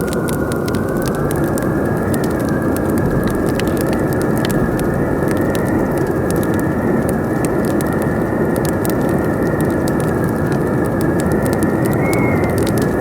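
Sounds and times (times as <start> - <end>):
howling wind: 0.0 - 13.0
wood fire crackling and popping: 0.0 - 13.0.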